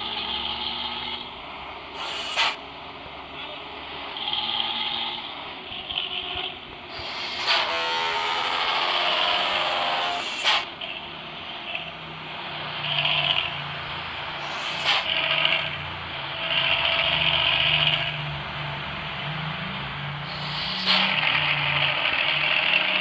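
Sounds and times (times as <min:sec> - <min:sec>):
bus engine growling: 0:00.0 - 0:23.0
sharp exhaust bursts: 0:01.9 - 0:02.6, 0:06.9 - 0:10.8, 0:14.3 - 0:15.8, 0:20.2 - 0:23.0.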